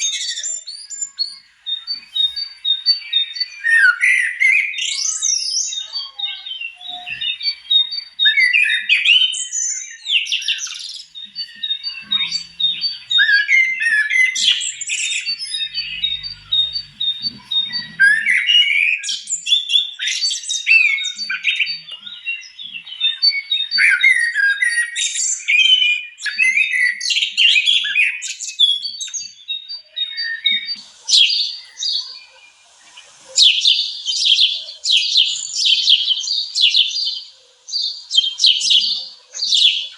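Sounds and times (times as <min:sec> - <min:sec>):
birds chirping in chorus: 0:00.0 - 0:39.9.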